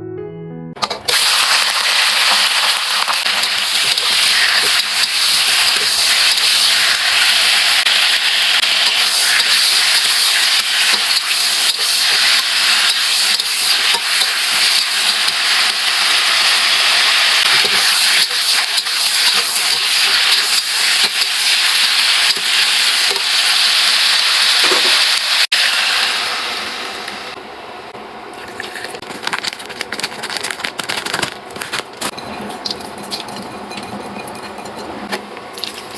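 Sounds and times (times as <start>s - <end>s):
food sizzling in hot oil: 1.1s - 26.7s.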